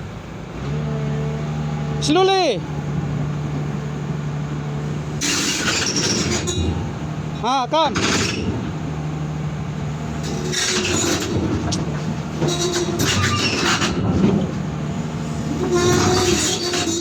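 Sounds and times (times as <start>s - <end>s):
diesel engine running: 0.0s - 17.0s
steel tracks squealing and clanking: 5.2s - 9.1s, 10.1s - 17.0s.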